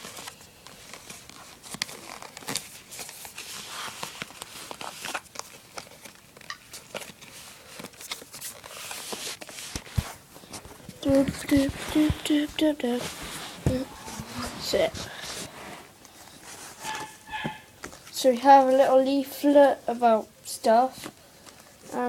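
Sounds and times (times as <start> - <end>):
packaging crinkling and rustling: 0.0 - 17.2.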